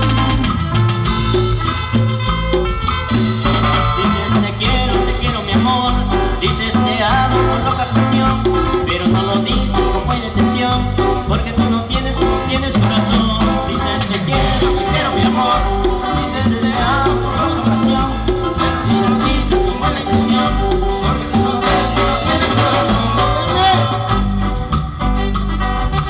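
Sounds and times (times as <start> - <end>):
band playing latin dance music: 0.0 - 26.0.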